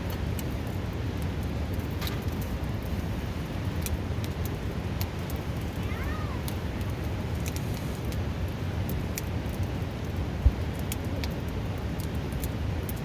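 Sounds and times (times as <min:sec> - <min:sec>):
campfire crackling: 0:00.0 - 0:13.0
river rushing: 0:00.8 - 0:09.5.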